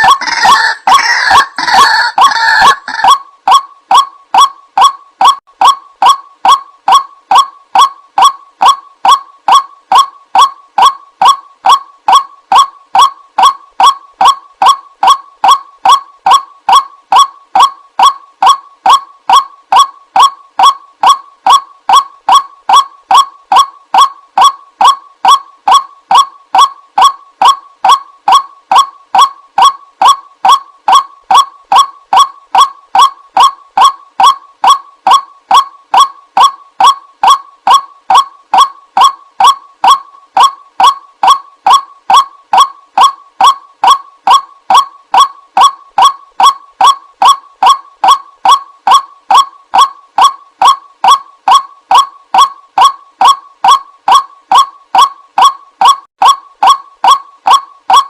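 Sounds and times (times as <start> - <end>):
waterhen honking call: 0.0 - 3.2.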